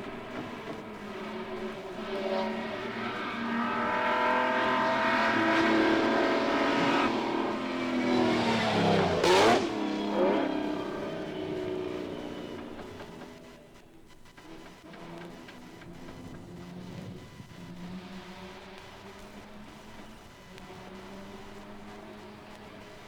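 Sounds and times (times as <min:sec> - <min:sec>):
racing car passing by: 0:00.0 - 0:13.6.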